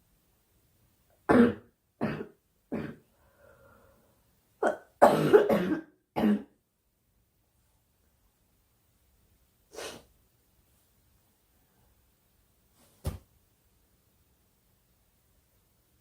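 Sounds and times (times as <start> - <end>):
girl coughing: 1.3 - 3.0, 4.6 - 6.5
faint breath: 3.1 - 4.3.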